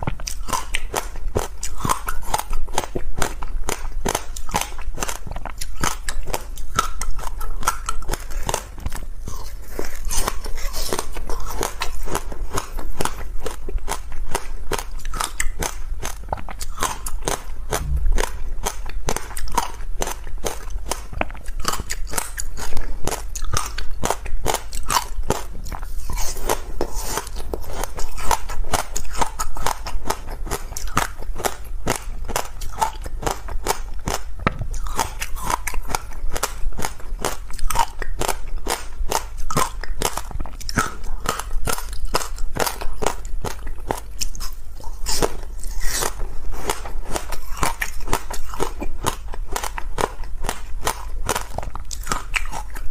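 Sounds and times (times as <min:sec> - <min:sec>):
chewing crunchy ice: 0:00.0 - 0:52.9.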